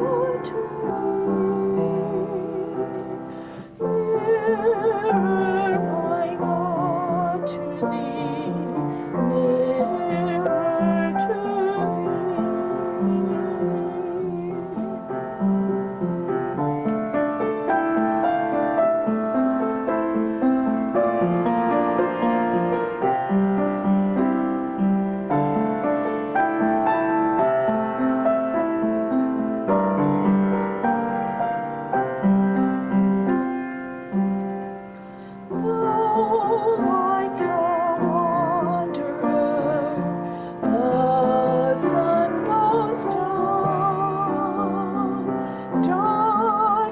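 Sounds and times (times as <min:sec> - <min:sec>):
woman singing with vibrato: 0:00.0 - 0:15.3, 0:35.5 - 0:46.9
piano music: 0:00.0 - 0:46.9.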